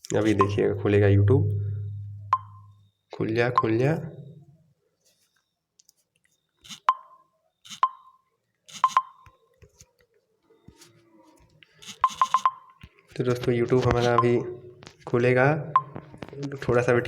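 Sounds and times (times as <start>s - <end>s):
phone touch-feedback clicks: 8.7s - 9.9s, 11.8s - 15.0s.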